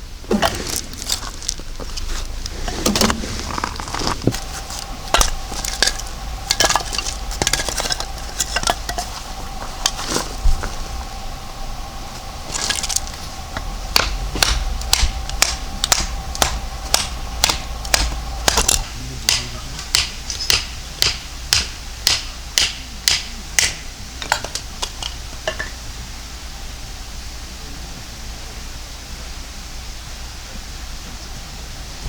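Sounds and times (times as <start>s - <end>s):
faint steady tone: 0.0s - 32.0s
sharp knocks: 13.9s - 23.8s.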